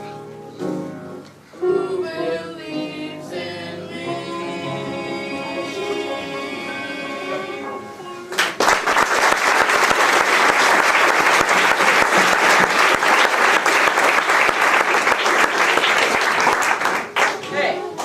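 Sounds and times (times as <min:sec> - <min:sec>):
audience applause: 0:08.3 - 0:17.5.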